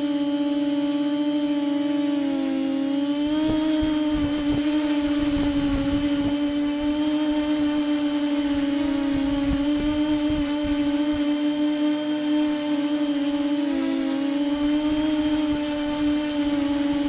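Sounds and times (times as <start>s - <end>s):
drone motors humming: 0.0s - 17.0s
gusty low rumbling: 3.3s - 11.3s.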